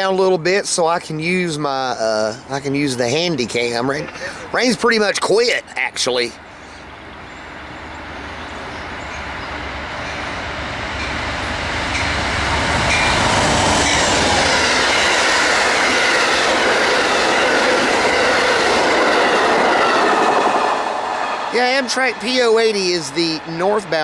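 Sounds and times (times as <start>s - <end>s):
diesel locomotive passing: 6.3s - 24.0s
train wheels clattering on rails: 9.0s - 24.0s.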